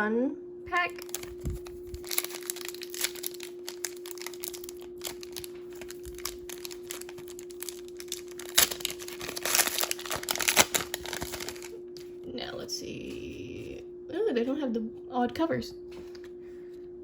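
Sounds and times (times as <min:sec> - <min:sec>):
packaging crinkling and tearing: 0:00.7 - 0:12.1.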